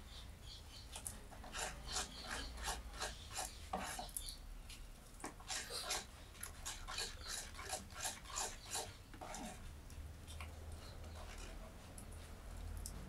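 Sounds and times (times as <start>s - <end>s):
rhythmic rasping scrapes: 1.4s - 4.1s, 5.4s - 9.7s, 11.0s - 11.7s.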